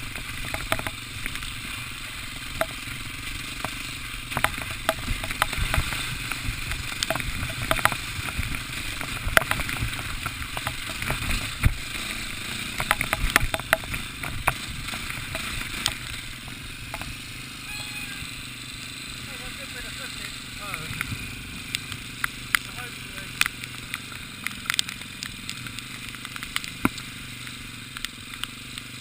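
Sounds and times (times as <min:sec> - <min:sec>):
sharp clicks and taps: 0:00.4 - 0:01.4, 0:03.6 - 0:06.0, 0:06.7 - 0:11.8, 0:12.8 - 0:16.2
wind rumbling on microphone: 0:04.2 - 0:18.4.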